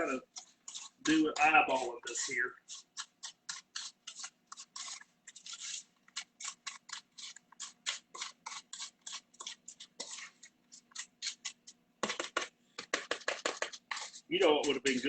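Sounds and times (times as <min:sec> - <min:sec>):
spoon scraping nuts in a bowl: 0:00.0 - 0:15.0.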